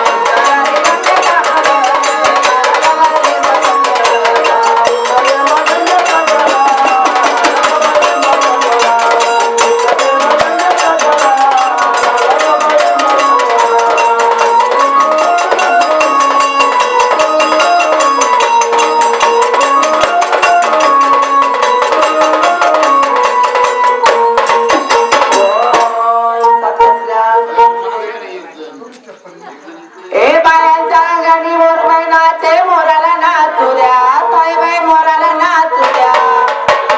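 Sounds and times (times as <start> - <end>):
fast percussion beat: 0.0 - 26.2, 35.0 - 36.9
rising and falling melody: 11.9 - 28.0.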